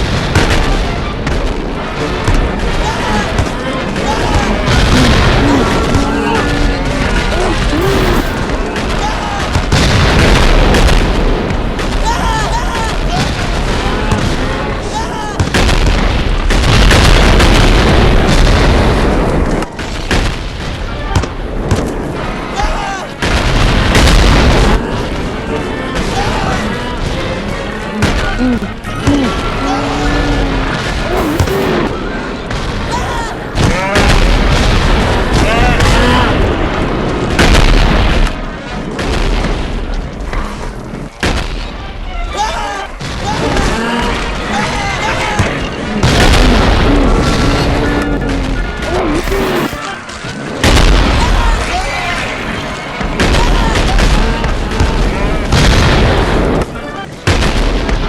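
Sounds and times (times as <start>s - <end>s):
stomach growl rumble: 0.0s - 14.8s, 23.3s - 41.4s, 43.1s - 56.5s
cartoon stomach growl: 2.0s - 8.6s, 27.9s - 36.5s, 43.3s - 50.0s
girl's voice: 31.1s - 32.4s.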